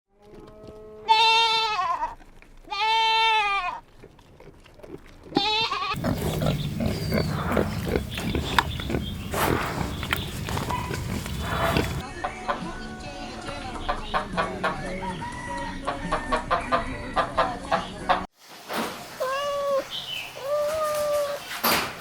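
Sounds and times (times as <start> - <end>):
goat bleating: 1.0 - 3.8, 5.3 - 12.0.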